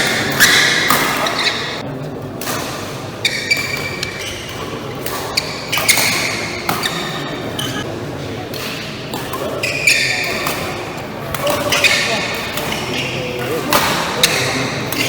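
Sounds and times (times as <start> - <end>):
rackets hitting shuttlecock: 0.0 - 1.8, 2.4 - 7.8, 8.4 - 15.0
shoes squeaking on court: 0.1 - 1.8, 3.2 - 7.9, 9.2 - 10.7, 11.5 - 13.4.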